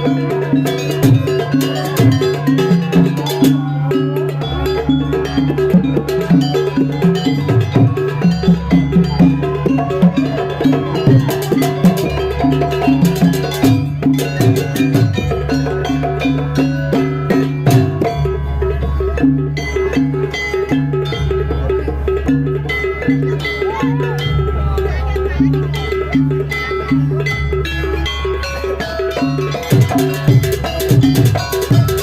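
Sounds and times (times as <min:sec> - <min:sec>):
drumming: 0:00.0 - 0:32.0
metallic pitched notes: 0:00.0 - 0:32.0.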